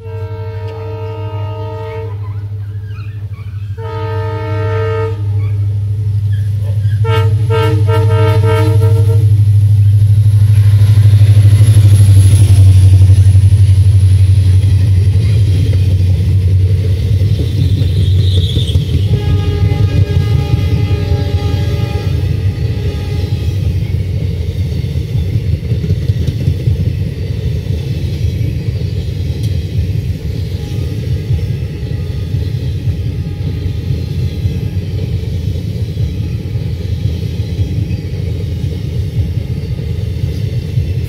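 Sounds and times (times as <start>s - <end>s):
locomotive horn blasts: 0.0s - 2.5s, 3.8s - 5.8s, 7.0s - 9.4s, 19.0s - 23.8s, 30.6s - 34.8s
locomotive engine drone: 0.0s - 41.0s
train rushing by: 0.0s - 41.0s.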